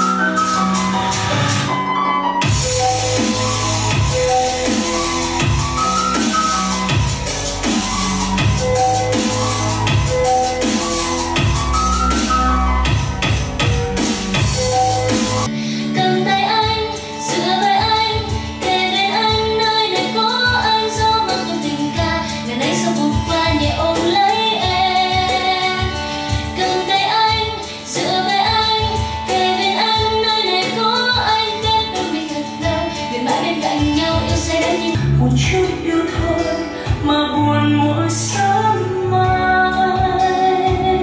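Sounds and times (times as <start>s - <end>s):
drums: 0.0s - 37.5s, 38.1s - 41.0s
pulsing bass line: 2.4s - 15.5s
woman singing: 15.5s - 41.0s.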